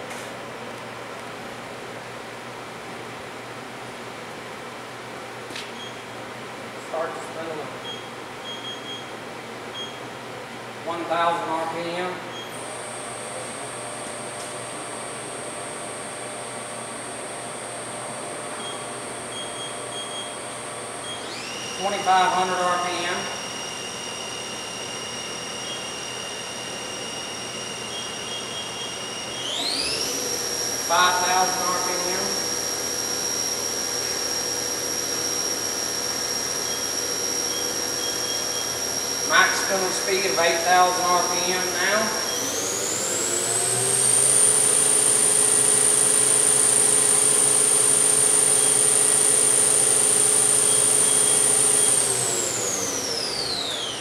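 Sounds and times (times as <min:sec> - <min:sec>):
machine spindle whine: 0:12.3 - 0:54.0.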